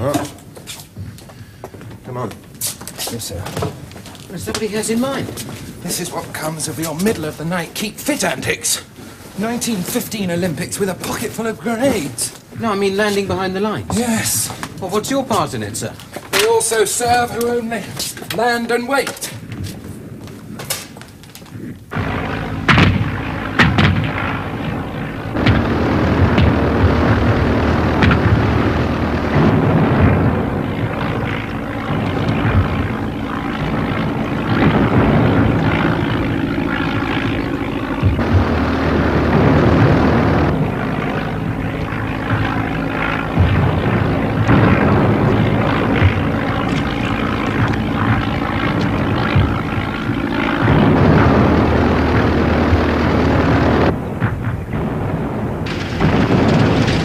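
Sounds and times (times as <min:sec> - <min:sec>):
biplane engine droning in flight: 0:21.3 - 0:57.0.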